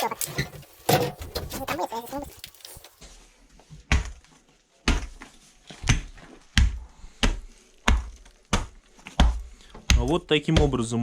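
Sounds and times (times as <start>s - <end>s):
heavy dull tamping blows on rubble: 6.6s - 10.9s.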